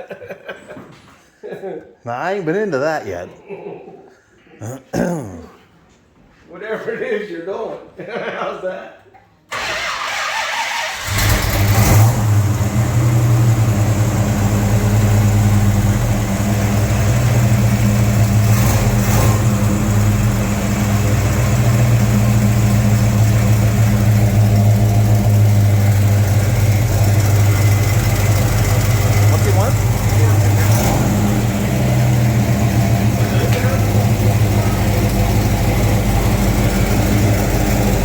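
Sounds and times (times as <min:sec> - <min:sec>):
car engine starting and idling: 0:09.5 - 0:38.0.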